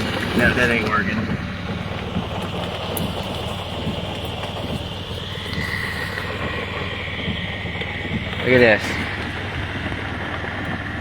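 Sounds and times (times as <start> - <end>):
vehicle driving through water: 0.0 - 11.0.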